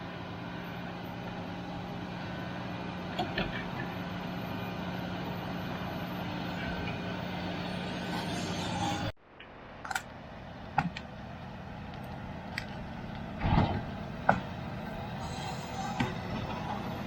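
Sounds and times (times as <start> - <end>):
vehicle engine running: 0.0 - 9.2.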